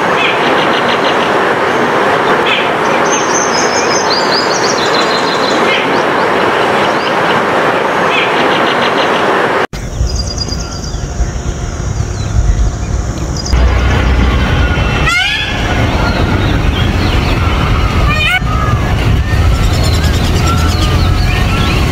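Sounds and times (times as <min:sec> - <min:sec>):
loud steady rushing noise: 0:00.0 - 0:21.9
low rumble: 0:09.8 - 0:21.9
small birds chirping: 0:19.4 - 0:21.9.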